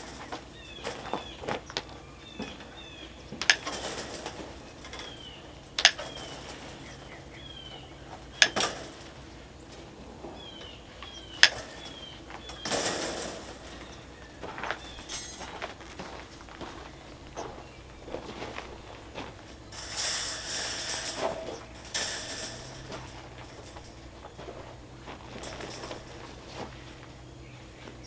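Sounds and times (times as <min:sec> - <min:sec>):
wire mesh rustling scrape: 0:00.0 - 0:01.2, 0:03.5 - 0:09.5, 0:11.2 - 0:14.2, 0:14.9 - 0:15.9, 0:18.1 - 0:27.1
small birds chirping: 0:00.0 - 0:28.0
wire mesh clanking: 0:00.0 - 0:28.0.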